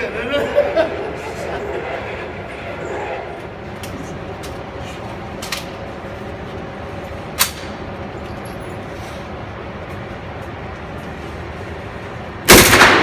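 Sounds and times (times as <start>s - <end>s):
shooting range din: 7.3s - 7.9s, 12.5s - 13.0s.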